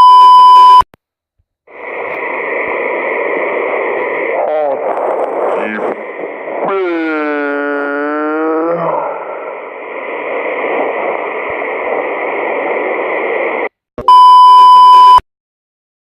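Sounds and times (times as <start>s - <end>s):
loud single-pitch beep: 0.0s - 0.8s, 14.0s - 15.2s
static hiss: 1.7s - 13.8s
steady high whine: 1.7s - 15.2s.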